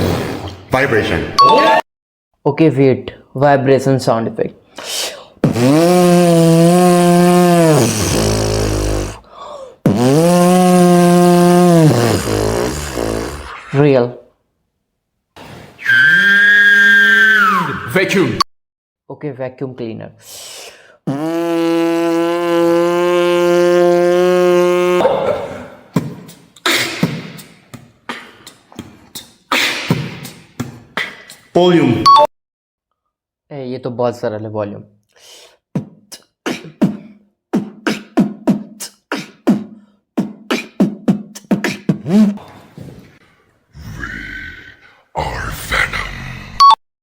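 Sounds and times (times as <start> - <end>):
breathy hissing bursts: 4.7 - 13.8
beatboxer buzzing hums: 5.4 - 13.7, 21.1 - 25.0, 36.0 - 42.4.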